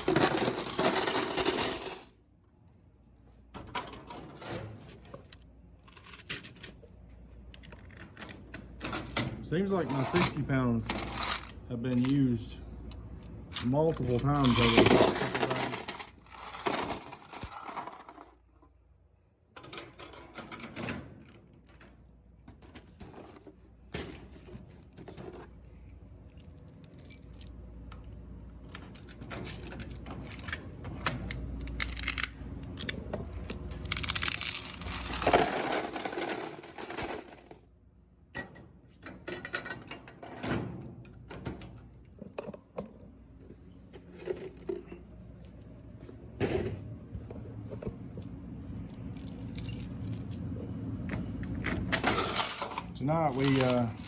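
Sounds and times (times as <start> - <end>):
coins clinking and rattling: 0.0 - 2.1, 5.8 - 6.8, 7.6 - 12.2, 13.6 - 18.4, 28.6 - 30.7, 31.3 - 37.7, 49.0 - 50.5, 51.2 - 54.0.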